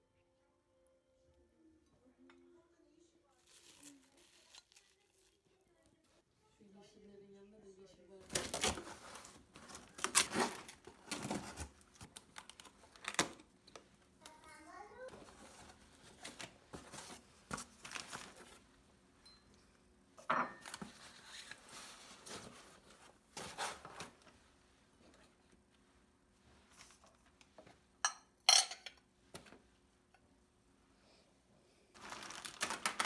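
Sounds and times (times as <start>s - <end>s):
dishes and glassware clinking: 19.2s - 20.8s, 28.0s - 29.0s.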